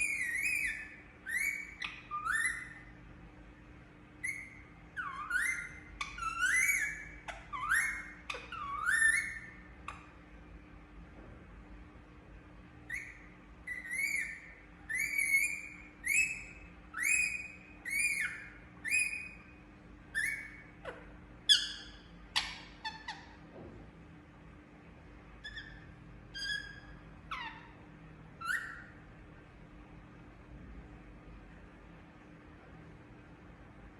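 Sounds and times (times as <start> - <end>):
parakeet shrill calls: 0.0 - 2.9, 4.2 - 10.1, 12.9 - 23.4, 25.4 - 27.8, 28.4 - 29.0.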